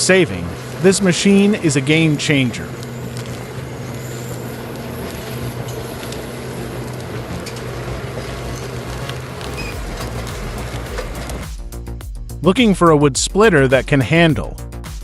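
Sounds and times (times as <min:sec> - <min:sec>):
heavy machine engine droning: 0:00.0 - 0:11.5.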